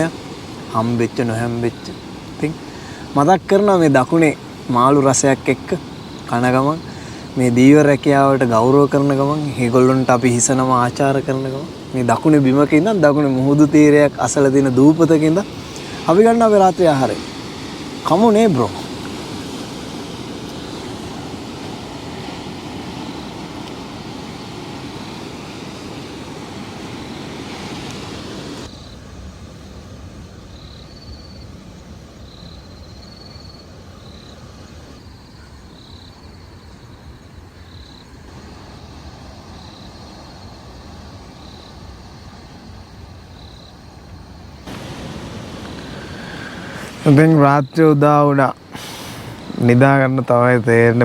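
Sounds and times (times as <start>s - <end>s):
outdoor rushing noise: 44.6s - 47.8s.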